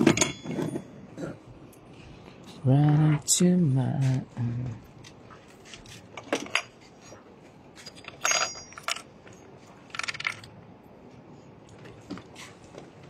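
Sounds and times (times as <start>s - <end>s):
metallic clinks and clicks: 7.8s - 9.1s.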